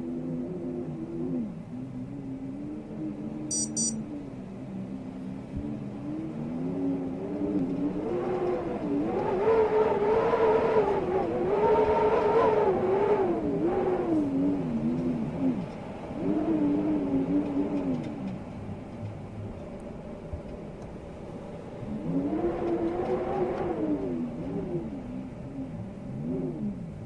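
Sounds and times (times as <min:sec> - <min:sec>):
high chirps: 0:03.5 - 0:04.0.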